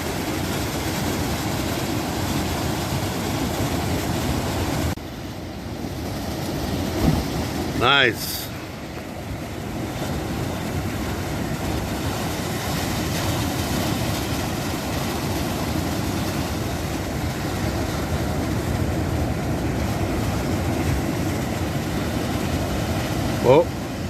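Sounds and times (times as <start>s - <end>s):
waves breaking in surf: 0.0s - 24.0s.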